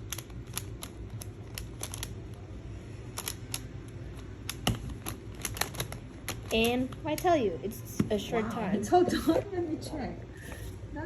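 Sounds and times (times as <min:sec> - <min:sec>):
puzzle cube layers clicking: 0:00.0 - 0:02.3.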